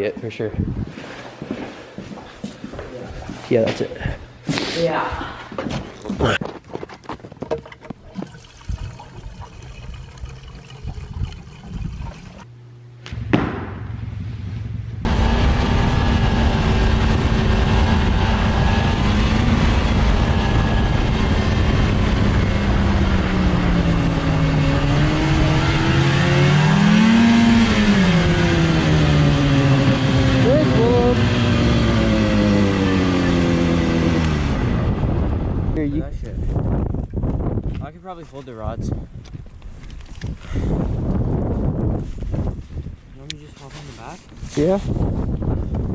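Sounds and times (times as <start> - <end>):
engine running steadily: 12.4 - 35.6.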